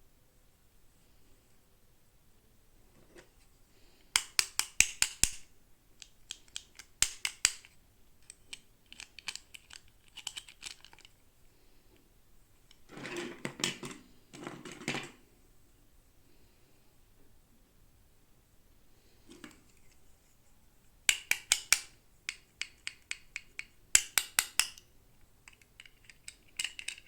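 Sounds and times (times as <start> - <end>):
plastic packaging clicks and taps: 4.2 - 11.1.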